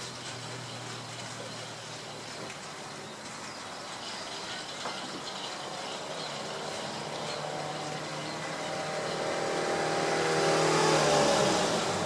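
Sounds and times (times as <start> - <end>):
vehicle engine passing by: 5.3 - 12.0.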